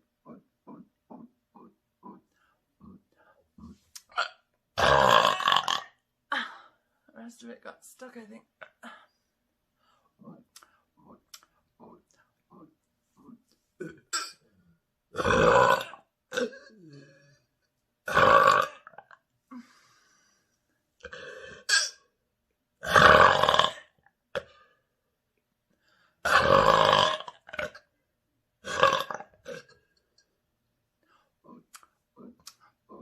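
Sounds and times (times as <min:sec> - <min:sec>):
person burping loudly: 0:03.6 - 0:06.4, 0:13.8 - 0:14.5, 0:15.1 - 0:19.2, 0:21.0 - 0:22.1, 0:22.8 - 0:24.6, 0:26.2 - 0:27.9, 0:28.6 - 0:30.1.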